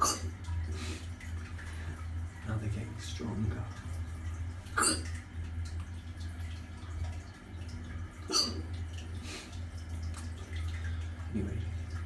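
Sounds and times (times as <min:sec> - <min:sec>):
man hiccuping: 0:04.8 - 0:05.1.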